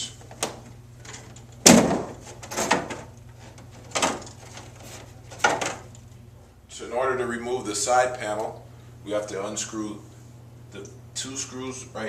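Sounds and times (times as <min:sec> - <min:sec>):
machine panel knocks and clatter: 0:01.6 - 0:03.1, 0:03.8 - 0:04.7, 0:05.3 - 0:05.9.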